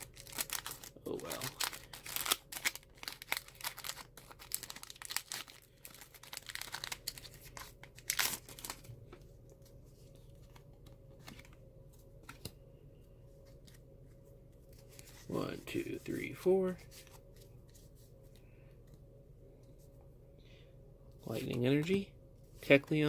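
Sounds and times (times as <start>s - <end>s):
foil wrapper crinkling and tearing: 0.0s - 8.9s.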